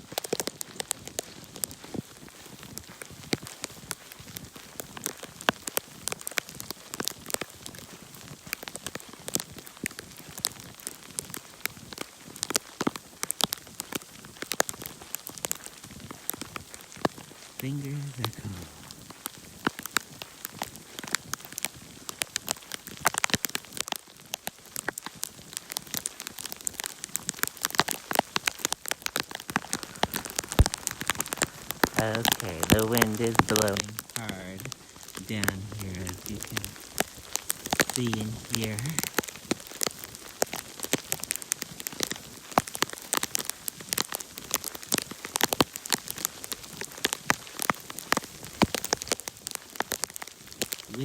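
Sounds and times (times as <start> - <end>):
hiss of wind-driven precipitation: 24.8 - 51.0
sleet ticking on surfaces: 25.8 - 41.3
ice pellets clicking: 29.5 - 36.8.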